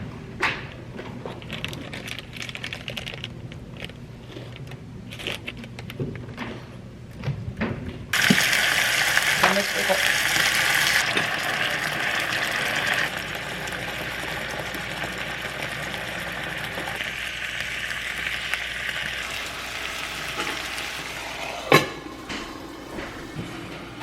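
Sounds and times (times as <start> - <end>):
food sizzling in a pan: 8.2 - 22.8.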